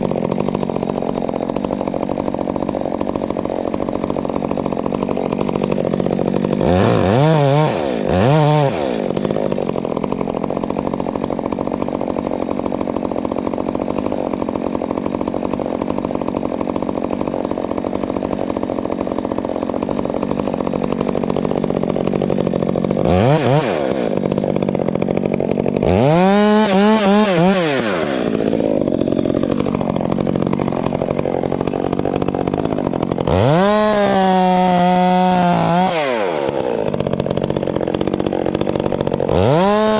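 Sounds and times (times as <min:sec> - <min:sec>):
chainsaw revving: 0:00.0 - 0:39.9.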